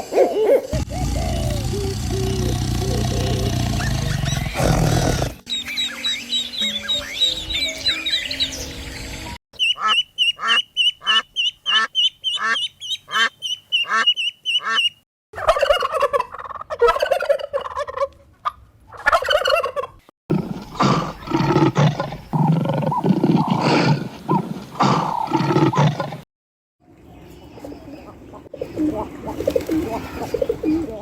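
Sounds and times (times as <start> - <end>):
turkeys gobbling: 9.6 - 20.0.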